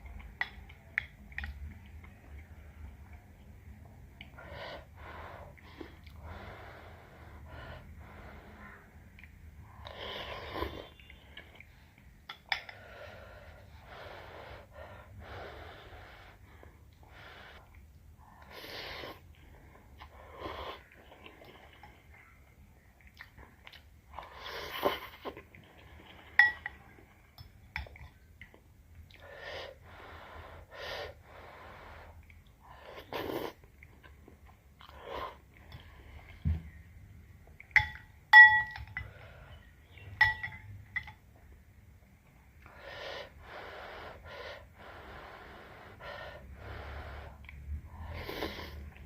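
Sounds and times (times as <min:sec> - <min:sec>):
chewing: 0:20.8 - 0:29.2.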